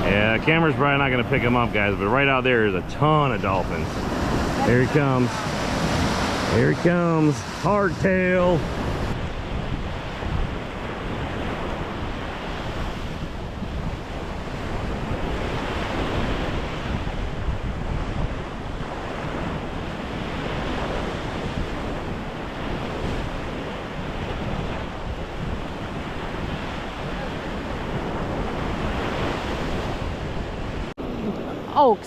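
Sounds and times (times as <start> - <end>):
surf washing onto beach: 0.0 - 31.9
wind buffeting microphone: 0.0 - 32.0.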